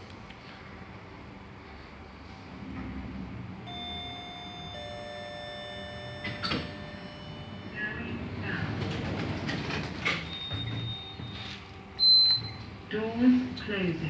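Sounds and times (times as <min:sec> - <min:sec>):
lift machinery whine: 0:03.6 - 0:13.1
lift car rumbling and clattering: 0:05.4 - 0:11.5.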